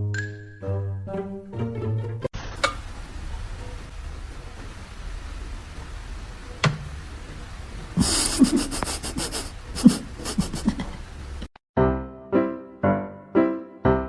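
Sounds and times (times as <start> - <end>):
animal panting: 8.0 - 10.8.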